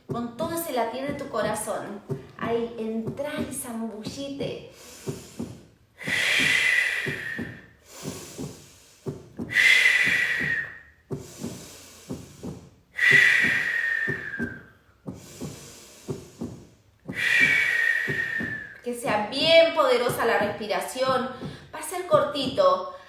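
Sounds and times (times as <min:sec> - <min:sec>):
soft knocking beat: 0:00.0 - 0:22.9
forceful breathing: 0:04.6 - 0:18.8, 0:20.0 - 0:21.8.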